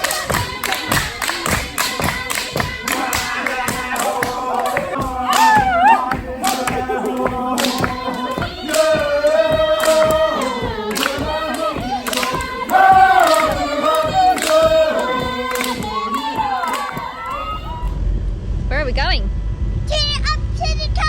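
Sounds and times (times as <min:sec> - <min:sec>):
singing over a steady beat: 0:00.0 - 0:18.0.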